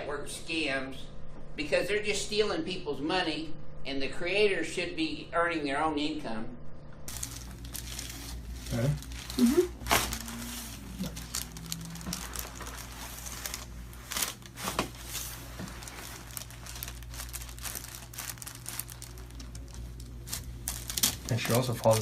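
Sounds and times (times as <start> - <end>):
steady low hum: 0.0 - 22.0
material crinkling and rustling: 7.1 - 22.0.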